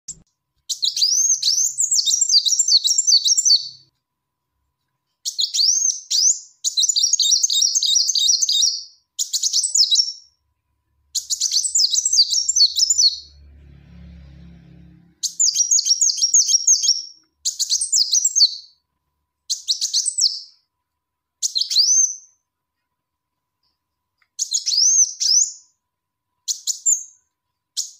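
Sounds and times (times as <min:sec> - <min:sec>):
brief low hum: 0:13.2 - 0:15.4.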